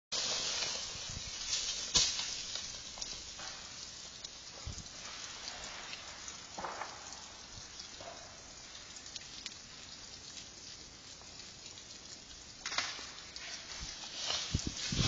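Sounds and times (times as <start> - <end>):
sleet and ice pellets pattering: 0.2 - 15.0
ice cracking and snapping: 12.6 - 15.0.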